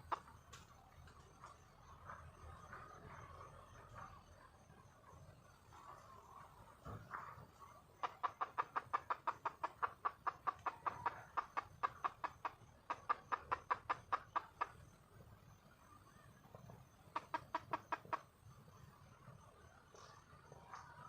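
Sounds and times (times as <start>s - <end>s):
hen clucking rapidly: 0.0s - 0.4s, 7.1s - 15.0s, 16.1s - 18.3s.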